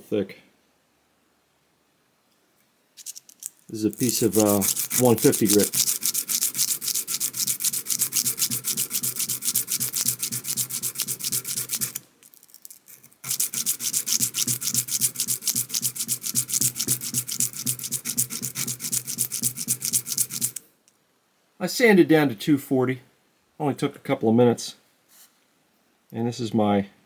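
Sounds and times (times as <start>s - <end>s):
screwdriver bit scraping on sandpaper: 3.0s - 20.6s.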